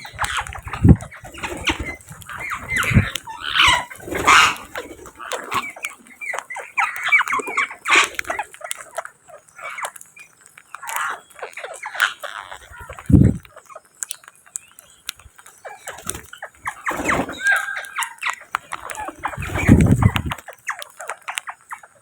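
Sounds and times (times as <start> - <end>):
parrots squawking: 0.0 - 8.9, 16.6 - 21.9.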